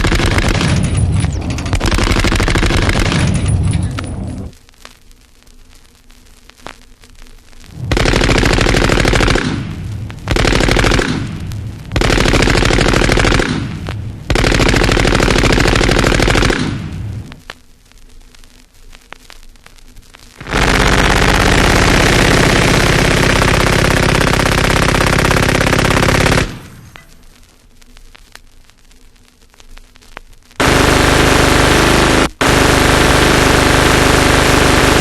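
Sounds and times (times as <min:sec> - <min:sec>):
automatic gunfire bursts: 0:00.0 - 0:01.0, 0:01.7 - 0:03.5, 0:07.8 - 0:17.0, 0:20.4 - 0:26.9, 0:30.6 - 0:35.0
vinyl record surface noise: 0:00.0 - 0:35.0.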